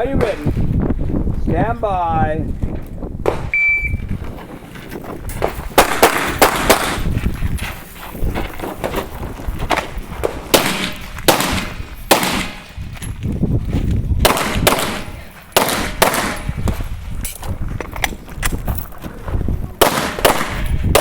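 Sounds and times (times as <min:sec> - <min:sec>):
pistol shots: 0:05.7 - 0:07.0, 0:10.4 - 0:12.7, 0:14.2 - 0:16.5, 0:19.8 - 0:21.0.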